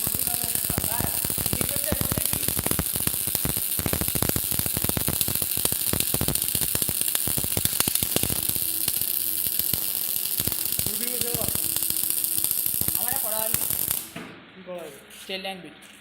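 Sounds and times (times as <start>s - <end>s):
welding arc crackling: 0.0s - 14.2s
steady hum: 0.0s - 15.1s.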